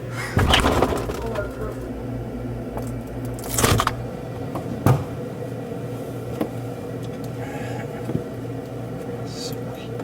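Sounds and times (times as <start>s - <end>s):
steady low hum: 0.0s - 10.0s
rustling clatter: 0.4s - 1.9s.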